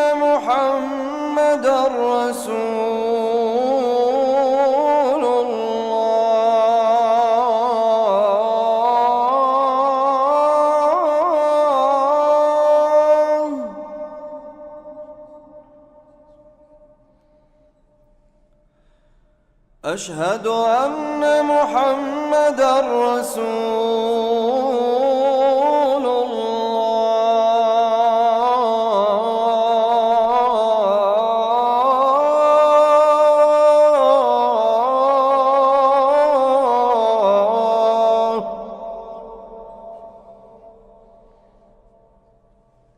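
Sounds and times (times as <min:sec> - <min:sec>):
man singing call to prayer: 0:00.0 - 0:17.1, 0:19.8 - 0:41.9.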